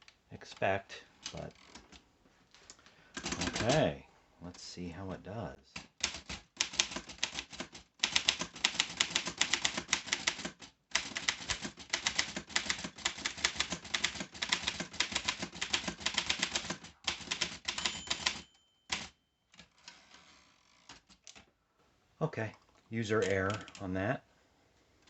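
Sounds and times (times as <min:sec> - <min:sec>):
typewriter bell ringing: 0:03.3 - 0:03.8, 0:17.2 - 0:19.8
typewriter key strikes: 0:06.0 - 0:19.7.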